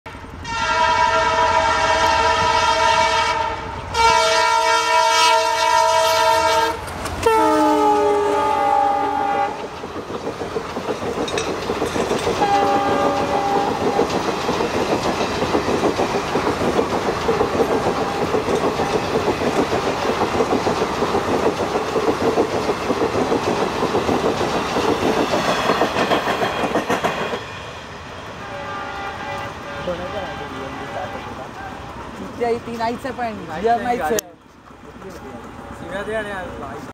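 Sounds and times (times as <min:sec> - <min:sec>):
locomotive horn blasts: 0:00.4 - 0:09.7, 0:12.4 - 0:13.9, 0:28.4 - 0:31.4
train wheels clattering over rail joints: 0:06.8 - 0:07.4, 0:08.4 - 0:27.5.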